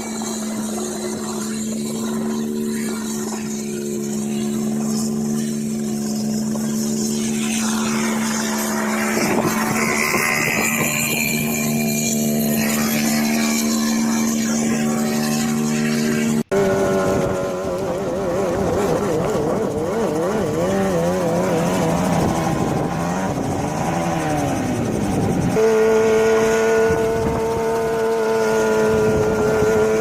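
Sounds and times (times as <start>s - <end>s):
helicopter engine and rotor running: 0.0s - 30.0s.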